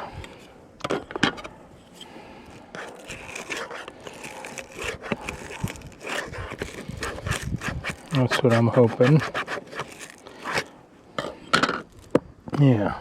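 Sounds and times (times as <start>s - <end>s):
straw rustling and crackling: 1.8s - 10.8s, 11.8s - 12.7s.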